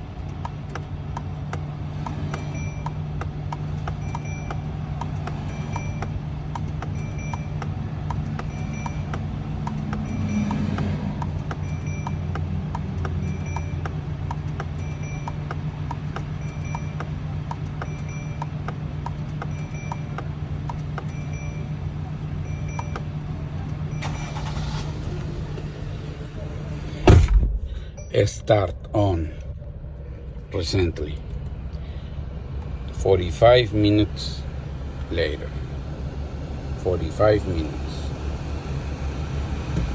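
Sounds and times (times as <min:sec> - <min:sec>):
light ticking: 0:00.0 - 0:26.0
warning chime beeping: 0:02.1 - 0:18.6, 0:19.4 - 0:20.3, 0:21.1 - 0:23.1, 0:23.9 - 0:25.6, 0:26.4 - 0:31.3
steady low hum: 0:24.8 - 0:39.9.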